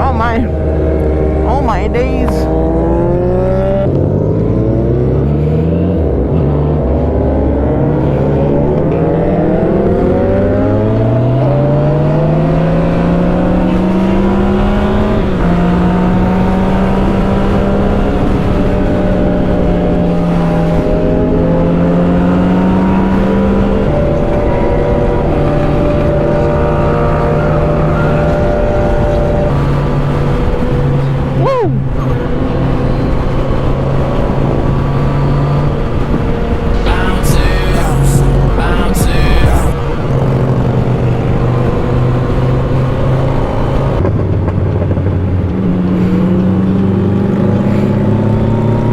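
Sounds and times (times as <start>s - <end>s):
motorcycle engine accelerating: 0.0s - 48.9s.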